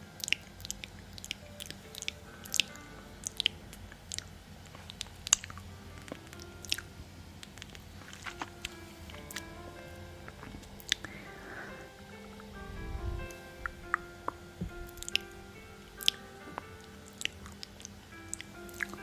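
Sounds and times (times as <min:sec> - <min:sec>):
faint music: 0:00.0 - 0:19.0
crunching and chewing crisp food: 0:04.1 - 0:09.4.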